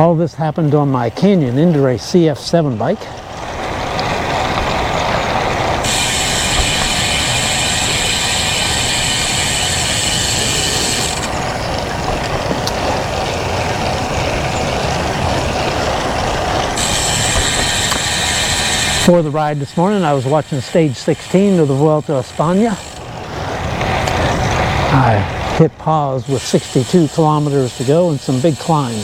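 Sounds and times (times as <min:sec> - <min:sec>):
tyre noise on road: 0:00.0 - 0:25.7
bicycle freehub ratcheting: 0:05.8 - 0:11.5, 0:16.8 - 0:23.2, 0:26.2 - 0:29.0.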